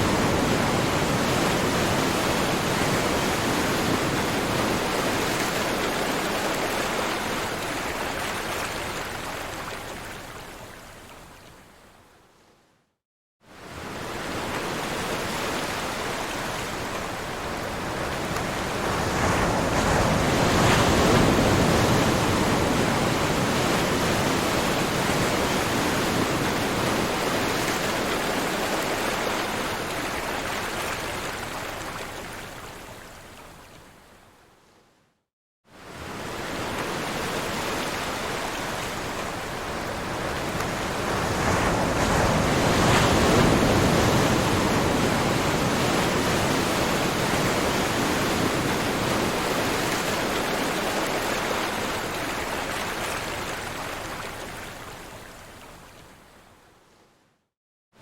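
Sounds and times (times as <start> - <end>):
ocean surf washing in: 13.6 - 30.4, 35.8 - 54.1.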